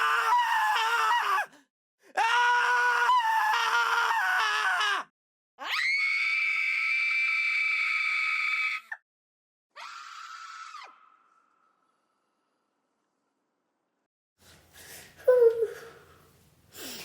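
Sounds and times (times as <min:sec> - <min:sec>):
high-pitched screams: 0:05.6 - 0:09.0, 0:09.8 - 0:12.0.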